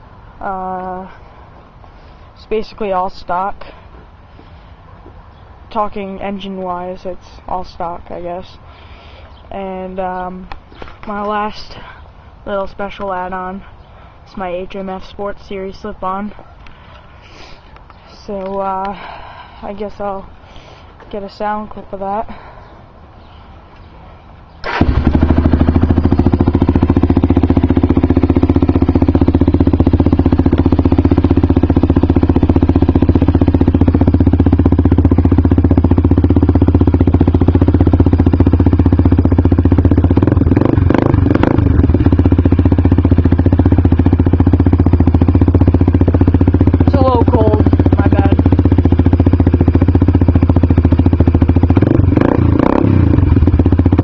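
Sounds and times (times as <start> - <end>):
atv engine running: 24.5 - 54.0.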